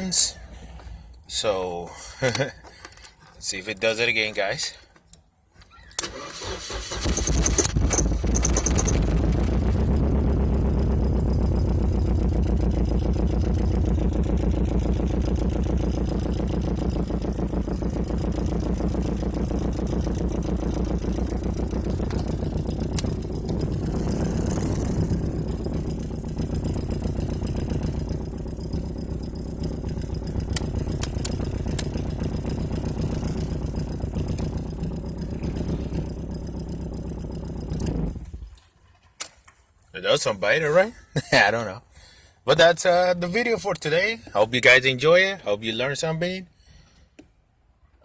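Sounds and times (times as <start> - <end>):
car engine idling: 6.1 - 38.6.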